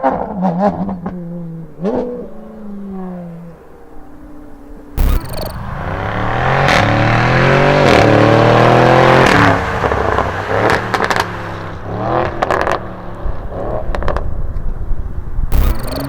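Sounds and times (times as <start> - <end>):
car engine accelerating hard: 5.8 - 14.2.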